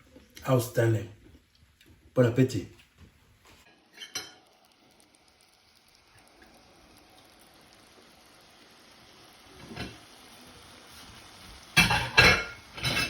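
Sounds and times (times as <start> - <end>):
faint steady hiss: 0.0 - 13.0.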